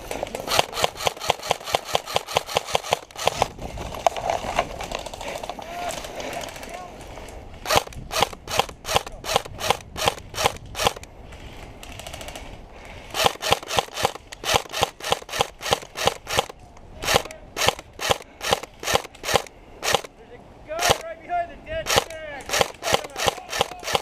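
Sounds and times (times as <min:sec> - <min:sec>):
airsoft gun shots: 0:00.5 - 0:03.5, 0:13.2 - 0:20.1, 0:20.8 - 0:21.0, 0:21.8 - 0:24.0.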